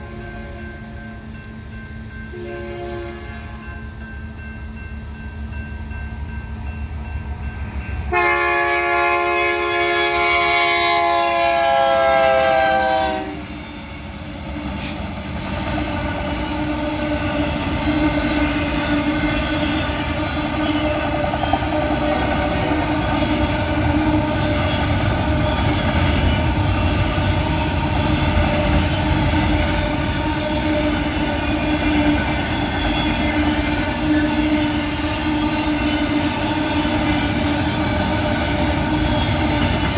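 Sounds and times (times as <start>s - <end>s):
train wheels on rails: 0.0s - 39.9s
locomotive air horn blast: 2.3s - 3.6s, 8.1s - 13.5s.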